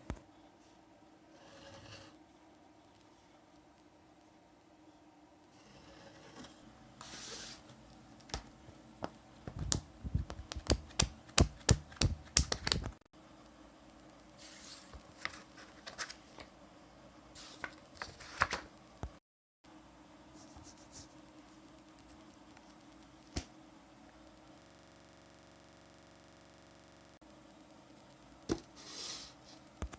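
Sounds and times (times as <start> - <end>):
sharp clicks and taps: 9.0 - 13.0.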